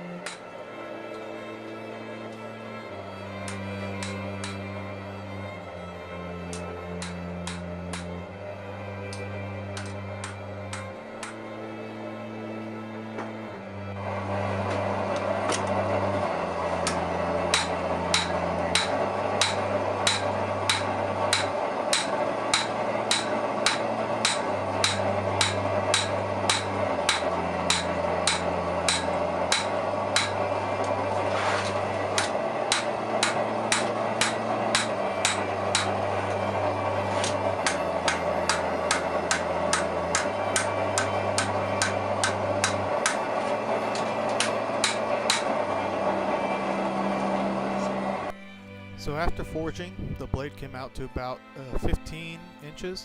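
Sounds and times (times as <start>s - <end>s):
hammer striking steel on anvil: 0.2s - 0.4s, 3.5s - 4.6s, 6.5s - 8.1s, 16.8s - 30.4s, 32.2s - 35.9s, 37.6s - 43.2s, 44.4s - 45.5s.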